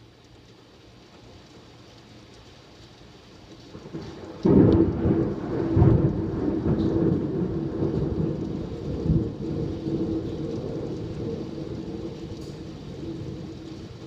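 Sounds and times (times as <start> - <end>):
steady rain: 0.0 - 14.0
thunder rumbling: 3.7 - 14.0.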